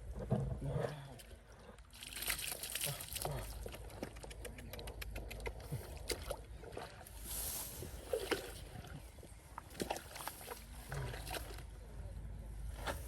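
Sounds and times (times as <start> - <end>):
splashing in shallow muddy water: 0.0 - 11.9
short splashes and knocks: 9.6 - 11.6.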